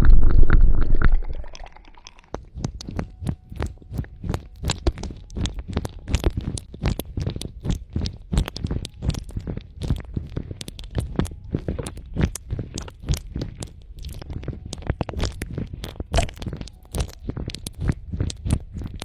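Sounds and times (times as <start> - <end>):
low rumble: 0.0 - 1.8
rapid clicks and crackles: 2.0 - 19.0.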